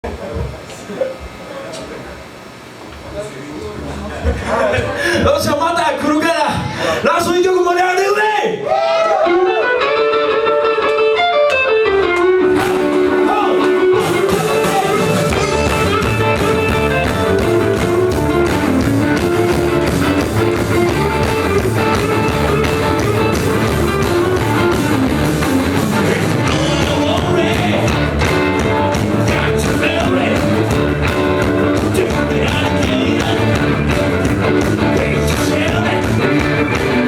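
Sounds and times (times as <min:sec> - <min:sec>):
live rock band playing: 0:09.1 - 0:37.0
electric guitar playing: 0:09.2 - 0:37.0.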